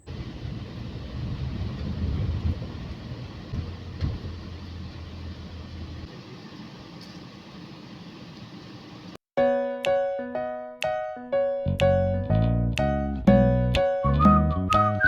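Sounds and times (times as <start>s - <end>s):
low hum: 0.0s - 6.6s
motor vehicle rumbling: 0.0s - 7.2s.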